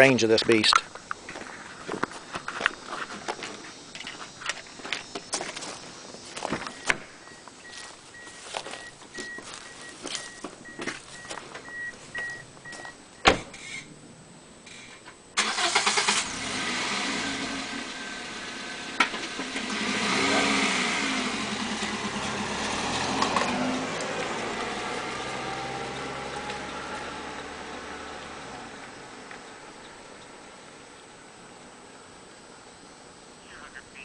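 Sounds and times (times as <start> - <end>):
car door shutting: 6.4 - 7.1, 10.1 - 13.9
car warning chime beeping: 6.5 - 13.4
car engine cranking and running: 14.7 - 30.5.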